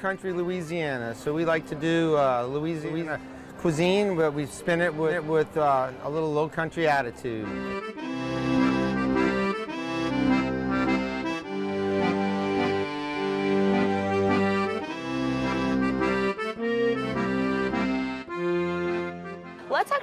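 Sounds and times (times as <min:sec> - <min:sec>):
accordion chords: 0:00.0 - 0:20.0
bass line: 0:07.6 - 0:19.6.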